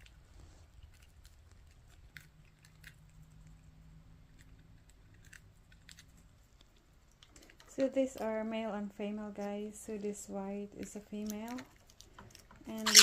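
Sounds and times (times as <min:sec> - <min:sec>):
birds nibbling lettuce: 0:00.0 - 0:08.4
faint low hum: 0:00.0 - 0:13.0.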